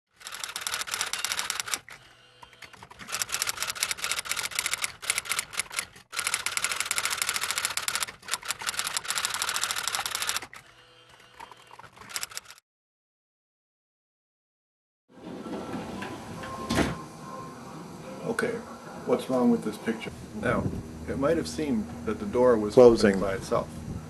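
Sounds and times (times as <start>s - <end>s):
rapid dense clicking: 0.2s - 1.8s, 3.1s - 10.5s.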